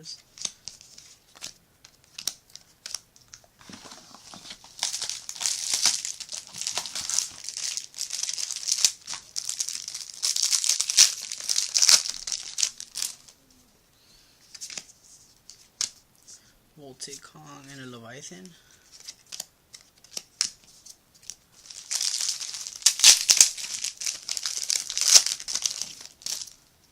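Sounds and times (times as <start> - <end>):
wrapper tearing and crinkling: 0.3 - 13.4, 19.0 - 26.6.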